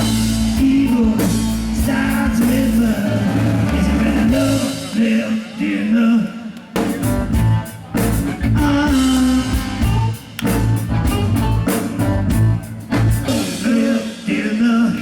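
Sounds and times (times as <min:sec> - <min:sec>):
live band playing funk rock: 0:00.0 - 0:05.2, 0:06.6 - 0:14.4.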